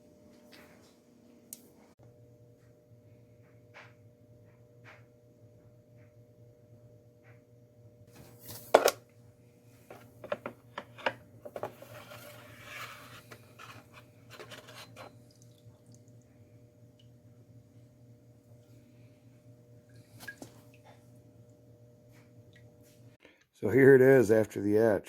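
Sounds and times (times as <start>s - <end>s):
steady low hum: 1.1s - 25.0s
handling knocks and clicks: 9.9s - 11.8s.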